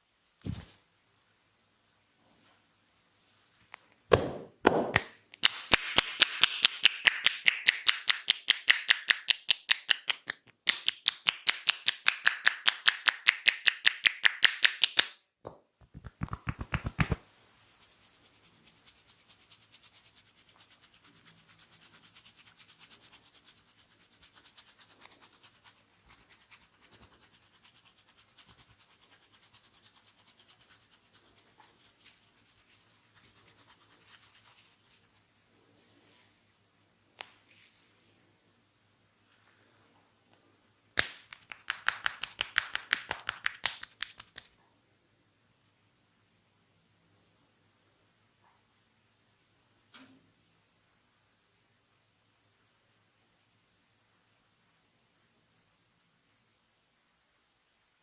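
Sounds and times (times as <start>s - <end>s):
hands striking body rhythmically: 4.1s - 15.2s, 15.8s - 17.2s, 41.0s - 44.6s
hands rubbing skin and hair: 4.8s - 15.0s, 15.8s - 36.2s, 41.0s - 44.6s.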